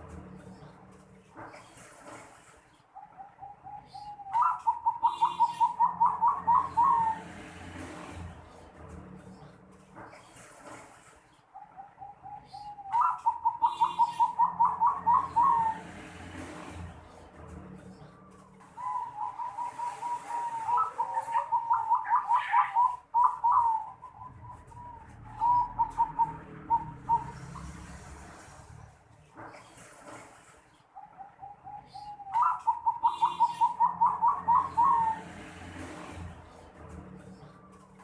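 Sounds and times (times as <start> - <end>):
dove cooing: 3.0 - 8.2, 11.6 - 16.7, 18.3 - 28.0, 31.0 - 36.2.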